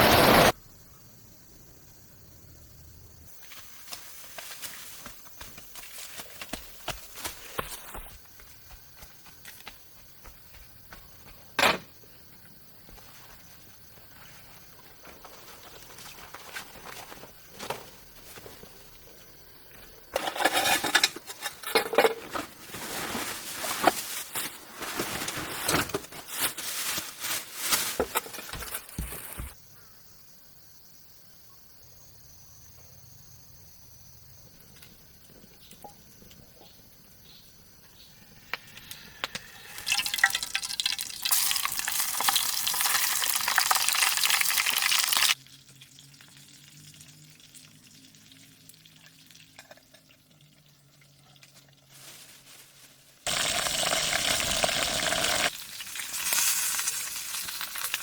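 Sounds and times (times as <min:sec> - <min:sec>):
food sizzling as it fries: 0:39.2 - 0:52.1, 0:53.2 - 0:58.0.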